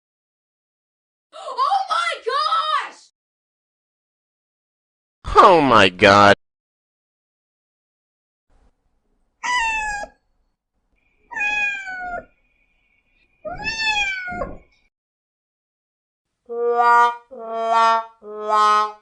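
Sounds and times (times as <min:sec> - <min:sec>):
cat meowing: 0:09.4 - 0:10.2, 0:11.3 - 0:12.3, 0:13.4 - 0:14.7.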